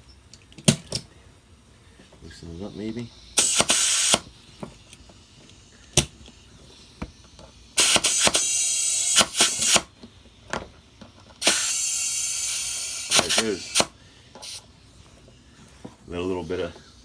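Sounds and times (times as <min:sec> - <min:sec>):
compressed air hissing into tire: 0:01.8 - 0:17.0
sharp clicks: 0:03.4 - 0:04.3, 0:13.0 - 0:14.6.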